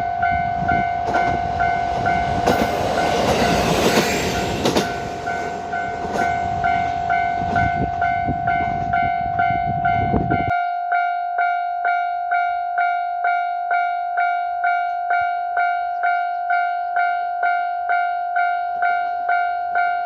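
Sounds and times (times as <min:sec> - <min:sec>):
railcar engine rumble: 0:00.0 - 0:10.5
train wheels clacking on rail joints: 0:01.0 - 0:09.1
level crossing bell ringing: 0:04.4 - 0:20.0.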